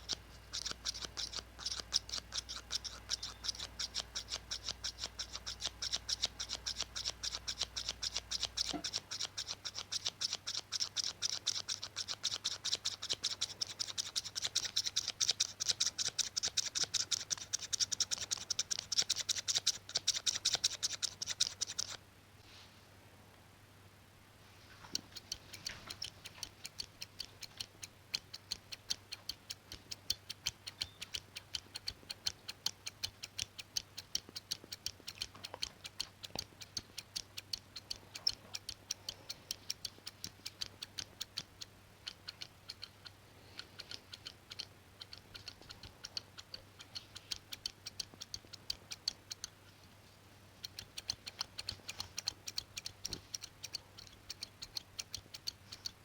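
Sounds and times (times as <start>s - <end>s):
scissors snipping: 0.0s - 22.0s.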